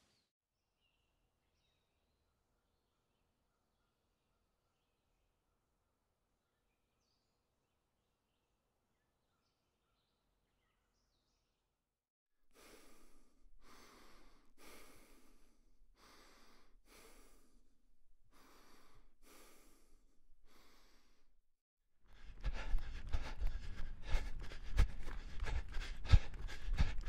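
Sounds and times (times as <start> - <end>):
person breathing noisily: 12.5 - 17.7, 18.3 - 21.3, 22.1 - 27.0.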